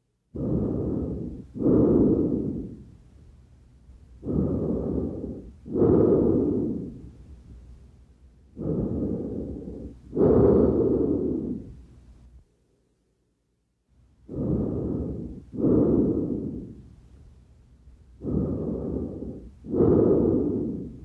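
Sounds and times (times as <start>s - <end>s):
breath sounds through stethoscope: 0.3s - 3.0s, 4.2s - 7.7s, 8.6s - 11.9s, 14.2s - 17.0s, 18.1s - 21.0s.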